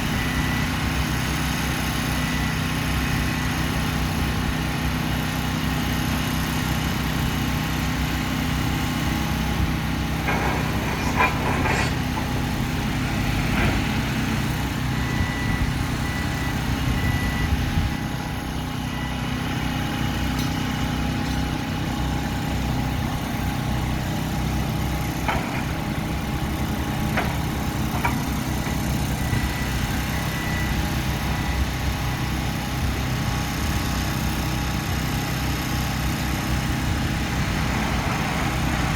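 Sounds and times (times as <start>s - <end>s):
diesel engine running: 0.0s - 38.9s
metallic clanks and knocks: 10.2s - 12.8s, 25.2s - 26.1s.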